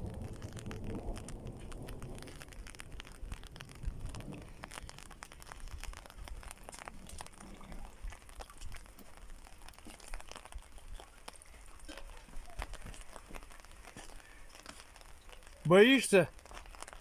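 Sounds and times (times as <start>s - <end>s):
raindrops ticking on hard surface: 0.0s - 17.0s.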